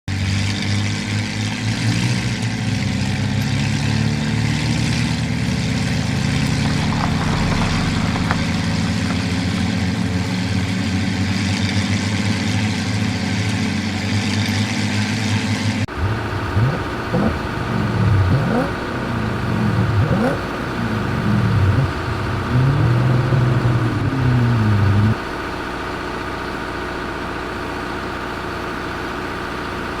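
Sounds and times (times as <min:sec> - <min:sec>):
vehicle engine running: 0:00.1 - 0:30.0
engine revving: 0:00.2 - 0:12.4, 0:15.9 - 0:25.5.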